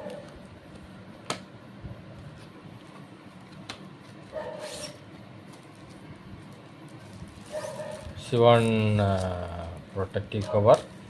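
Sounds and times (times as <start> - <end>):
box and accessories handled: 4.0 - 8.7.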